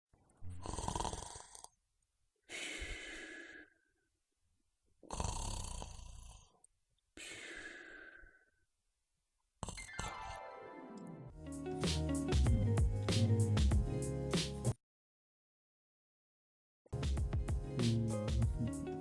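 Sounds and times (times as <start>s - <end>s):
person snoring: 0.4s - 1.7s, 2.5s - 3.8s, 5.0s - 6.6s, 7.2s - 8.5s, 9.6s - 10.7s.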